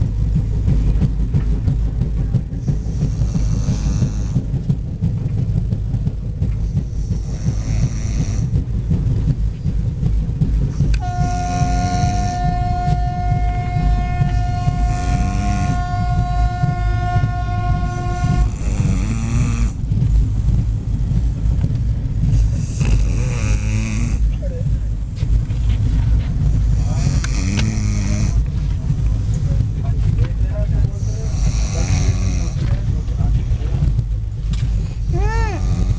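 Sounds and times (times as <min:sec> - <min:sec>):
steady horn-like tone: 0:10.8 - 0:20.0
man snoring loudly: 0:22.6 - 0:24.2, 0:26.9 - 0:28.4, 0:31.3 - 0:32.6.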